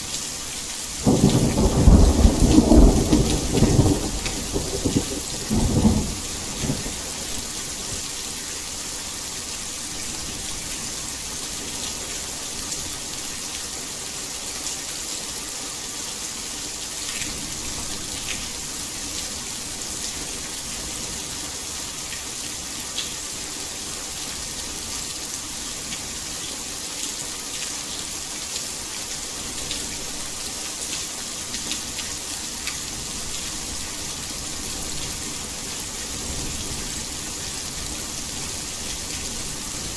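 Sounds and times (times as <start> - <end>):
heavy rain falling: 0.0 - 39.9
thunder rumble: 1.0 - 7.4.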